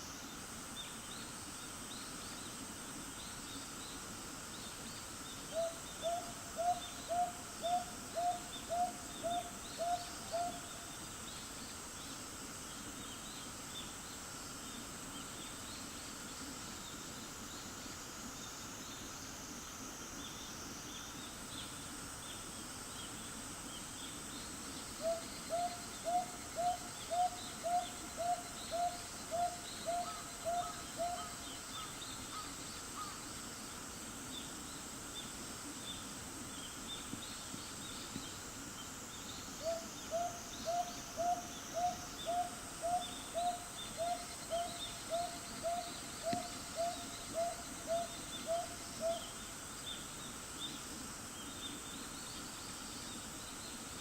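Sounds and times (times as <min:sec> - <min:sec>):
high insect chirping: 0:00.0 - 0:54.0
owl hooting: 0:05.5 - 0:10.7, 0:25.0 - 0:33.2, 0:39.6 - 0:49.3.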